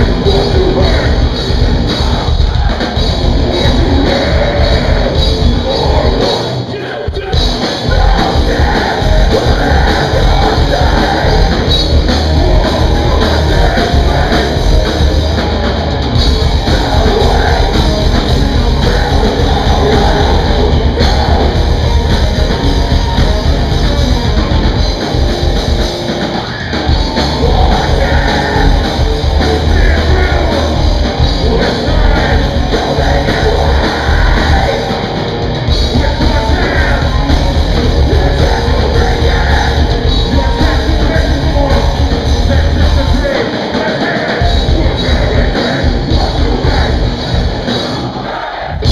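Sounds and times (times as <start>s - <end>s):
person singing: 0.0s - 15.6s, 16.2s - 25.5s, 26.3s - 48.9s
heavy metal band playing: 0.0s - 48.9s.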